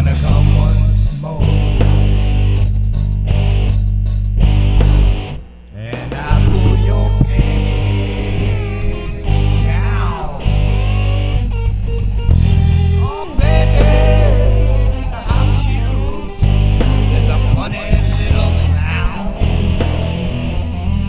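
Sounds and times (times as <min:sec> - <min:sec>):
man singing: 0:00.0 - 0:01.8, 0:05.7 - 0:10.9, 0:12.4 - 0:20.5
electric guitar: 0:00.0 - 0:03.8, 0:06.0 - 0:21.0
heavy bass line: 0:00.0 - 0:05.5, 0:06.2 - 0:21.0.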